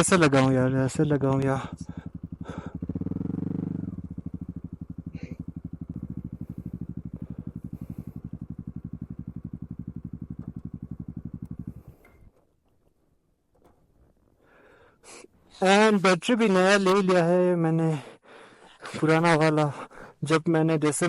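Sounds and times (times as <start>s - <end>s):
motorcycle engine revving: 0.0s - 12.3s
motorcycle engine idling: 0.0s - 13.0s.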